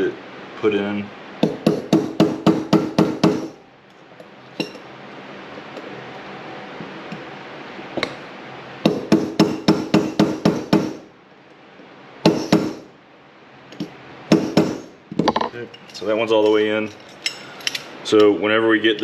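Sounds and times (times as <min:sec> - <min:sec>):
hammer striking metal punch: 0:01.4 - 0:03.6, 0:08.8 - 0:11.0, 0:12.2 - 0:12.8, 0:13.8 - 0:15.5.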